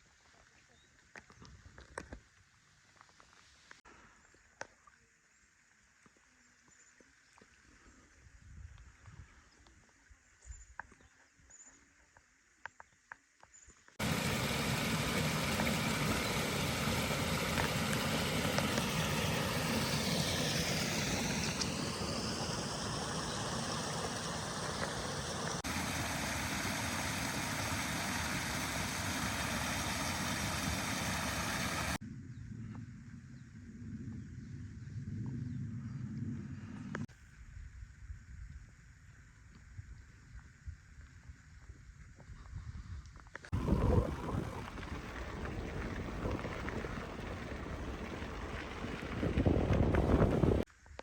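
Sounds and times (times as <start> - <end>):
runoff water pouring: 14.0 - 32.0, 43.5 - 50.7.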